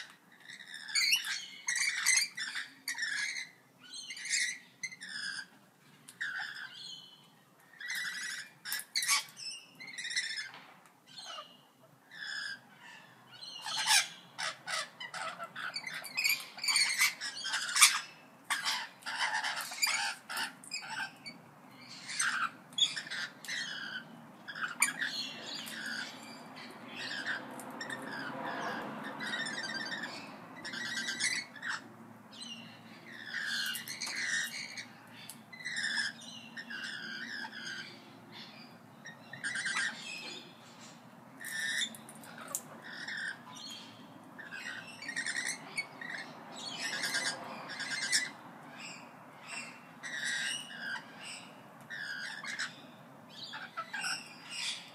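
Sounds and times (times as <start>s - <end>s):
parrots squawking and chirping: 0.0s - 54.9s.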